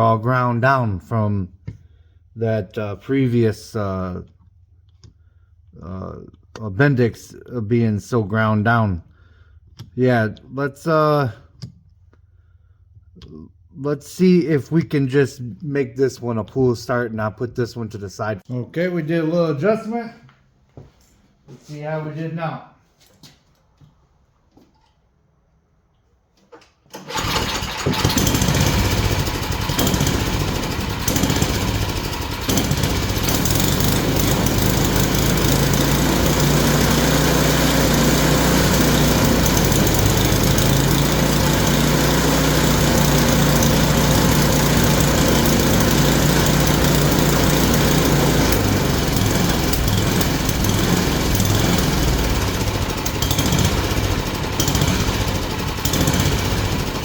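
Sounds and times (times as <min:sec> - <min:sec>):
snowblower engine running: 0:27.0 - 0:57.0.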